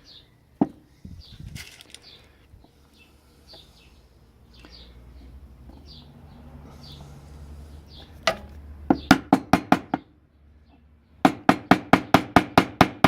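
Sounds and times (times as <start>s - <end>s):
small bird chirping: 0.0s - 7.1s
rustling of padlock parts: 1.3s - 2.8s.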